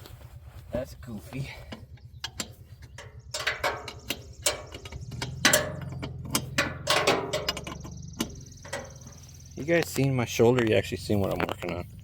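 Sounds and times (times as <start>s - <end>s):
low engine-like hum: 0.1s - 12.0s
hand tools clanking on metal: 1.6s - 10.8s.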